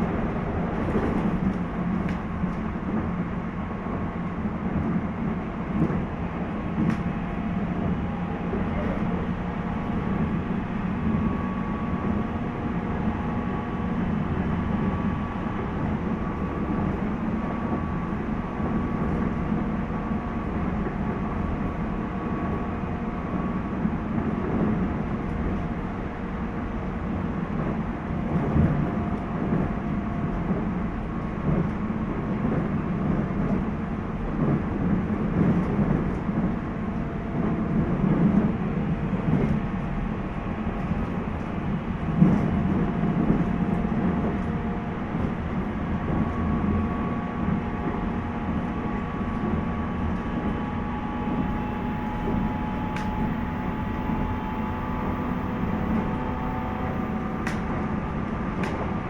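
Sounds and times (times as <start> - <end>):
train wheels rumbling on rail: 0.0 - 59.0
faint motor whine: 48.4 - 59.0.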